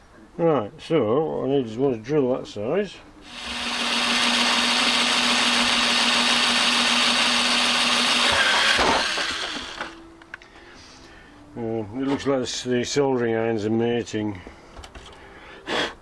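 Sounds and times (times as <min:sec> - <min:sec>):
electric drill boring plastic: 0:03.2 - 0:10.0.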